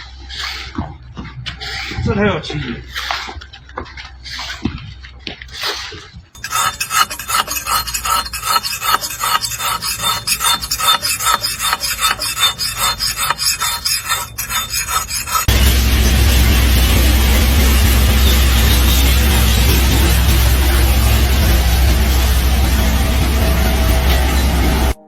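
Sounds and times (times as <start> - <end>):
rhythmic rasping scraping strokes: 0.0 - 3.5, 5.5 - 25.0
loud steady noise with low hum: 15.5 - 25.0.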